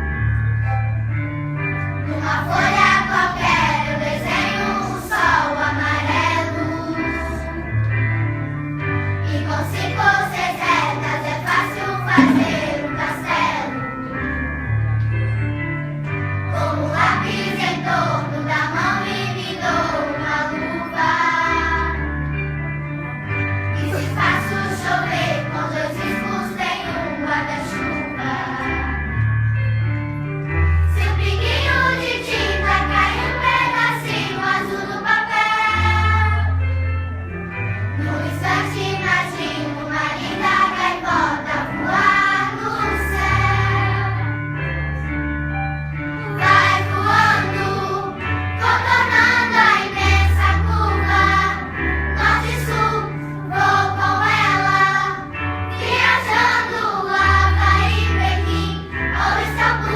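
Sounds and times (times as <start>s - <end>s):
instrumental backing with bass: 0.0s - 26.5s, 27.1s - 59.9s
choir singing: 2.1s - 7.6s, 9.3s - 13.9s, 23.8s - 29.0s, 31.0s - 36.6s, 38.0s - 44.4s, 46.2s - 59.9s.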